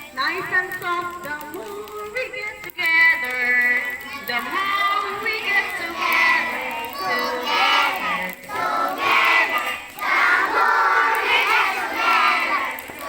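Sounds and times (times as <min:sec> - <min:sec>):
children singing together: 0:04.1 - 0:13.0.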